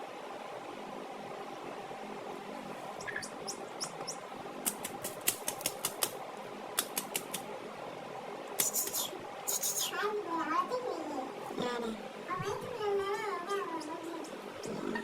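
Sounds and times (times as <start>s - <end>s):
steady background hum: 0.0s - 15.0s
chickens chirping: 3.0s - 4.3s
sharp rustling clicks: 4.6s - 6.2s, 6.8s - 7.4s.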